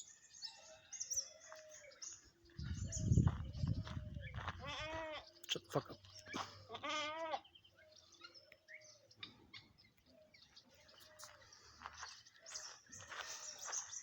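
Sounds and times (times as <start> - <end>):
goat bleating: 4.6 - 5.3, 6.6 - 7.5.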